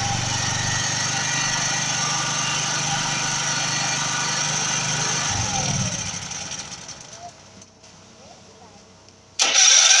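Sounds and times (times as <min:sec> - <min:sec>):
petrol generator engine running: 0:00.0 - 0:07.6.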